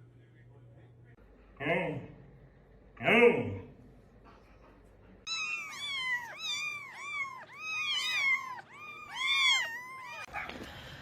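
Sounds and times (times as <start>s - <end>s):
cat meowing: 5.3s - 10.6s.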